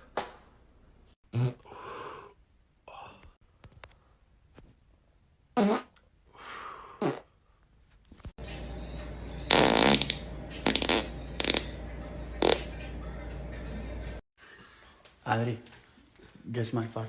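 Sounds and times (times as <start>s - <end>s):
person farting: 1.3s - 1.7s, 5.6s - 6.0s, 7.0s - 7.3s, 9.5s - 11.7s, 12.4s - 12.6s.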